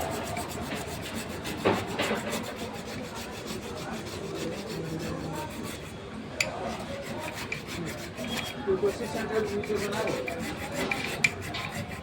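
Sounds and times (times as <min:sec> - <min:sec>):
fast rasping strokes: 0:00.0 - 0:12.0.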